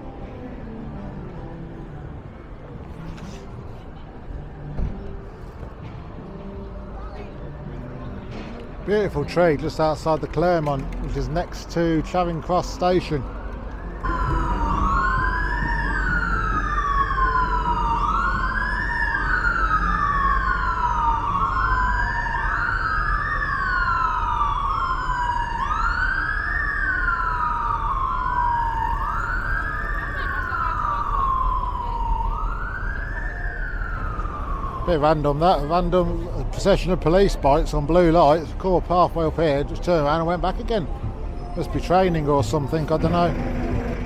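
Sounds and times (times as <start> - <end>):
police sirens wailing: 9.0 - 36.6, 41.7 - 44.0.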